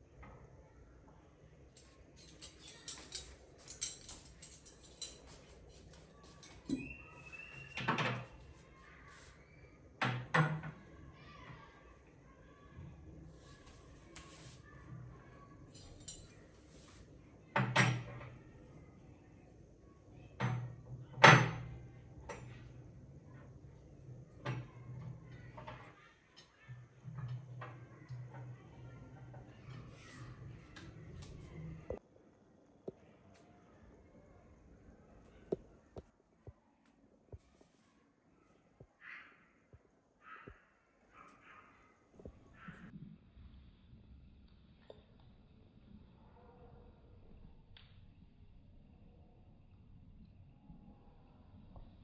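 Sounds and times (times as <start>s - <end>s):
tableware clicking and tapping: 2.2s - 7.0s, 15.7s - 16.4s, 17.6s - 18.4s, 20.4s - 22.6s.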